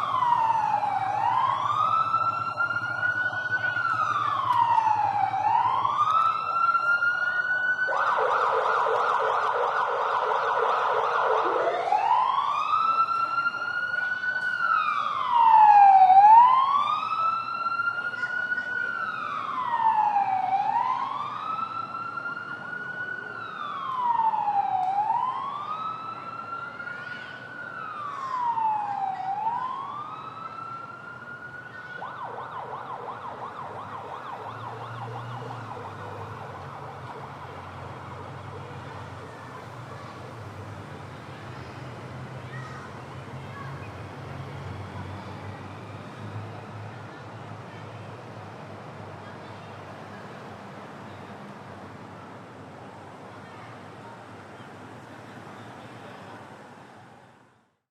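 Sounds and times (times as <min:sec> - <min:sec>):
emergency siren wailing and yelping: 0:00.0 - 0:40.4.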